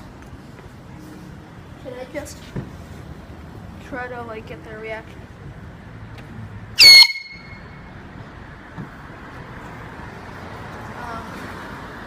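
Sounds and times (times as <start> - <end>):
air horn blast: 6.8 - 7.6.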